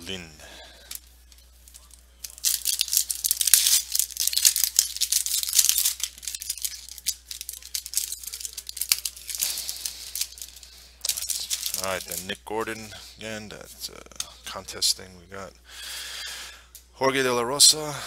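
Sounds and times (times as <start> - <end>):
cards rustling: 0.7 - 13.0
foil wrapper tearing and crinkling: 0.8 - 12.4.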